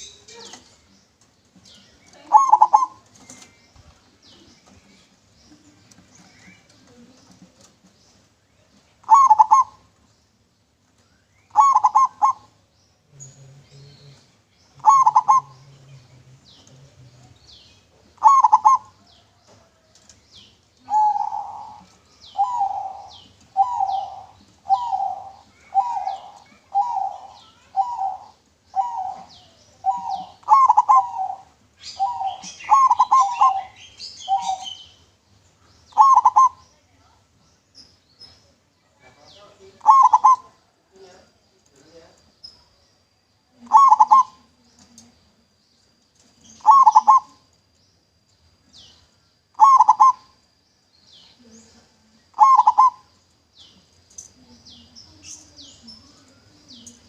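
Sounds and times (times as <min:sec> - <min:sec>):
dove cooing: 0:02.1 - 0:03.5, 0:09.0 - 0:10.0, 0:11.5 - 0:12.6, 0:13.2 - 0:19.8, 0:20.8 - 0:34.9, 0:35.9 - 0:36.6, 0:39.6 - 0:40.8, 0:43.6 - 0:45.0, 0:46.6 - 0:47.4, 0:49.5 - 0:50.4, 0:51.8 - 0:53.2
faint high chirps: 0:10.9 - 0:57.0.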